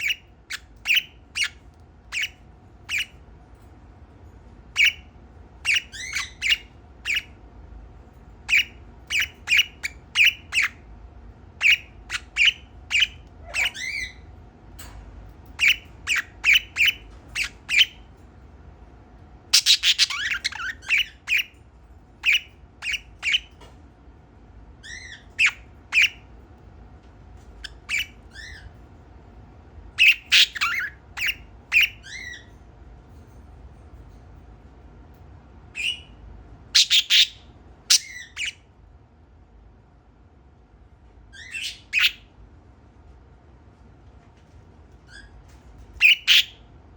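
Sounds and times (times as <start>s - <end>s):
budgerigar chirping and squawking: 0.0s - 3.2s, 4.8s - 7.4s, 8.4s - 10.8s, 11.6s - 14.3s, 15.6s - 18.1s, 19.5s - 21.6s, 22.2s - 23.6s, 24.8s - 26.3s, 27.6s - 28.8s, 30.0s - 32.5s, 35.8s - 38.7s, 41.3s - 42.3s, 45.1s - 45.4s, 46.0s - 46.7s.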